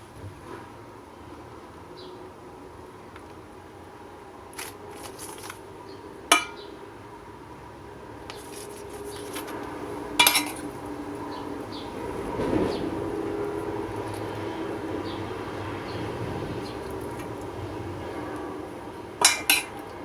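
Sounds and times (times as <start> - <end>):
metal utensils clinking: 6.3 - 6.7, 8.3 - 10.8, 19.2 - 19.9
ringing metallic clanks: 6.3 - 6.7, 10.2 - 10.7, 19.2 - 19.8.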